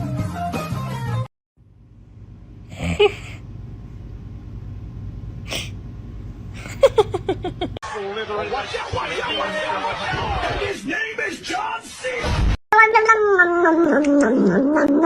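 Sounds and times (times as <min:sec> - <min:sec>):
person sneezing: 0:05.5 - 0:05.8.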